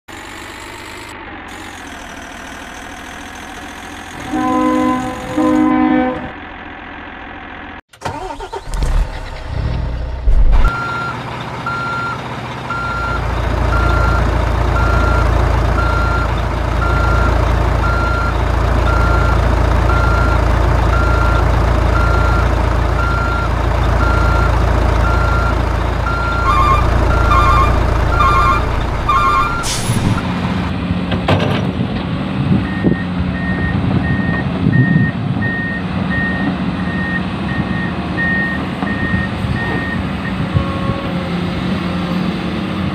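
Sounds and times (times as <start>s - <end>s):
low engine rumble: 0.2s - 41.8s
toy reversing beeps: 26.1s - 29.7s
higher-pitched beeper: 26.1s - 29.9s.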